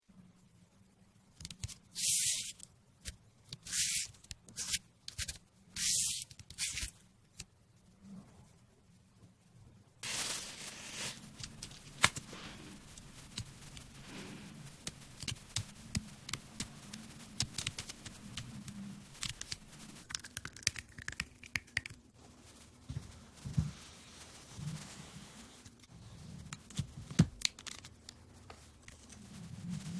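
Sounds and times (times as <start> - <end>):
bubble wrap crinkling and popping: 10.0 - 29.9.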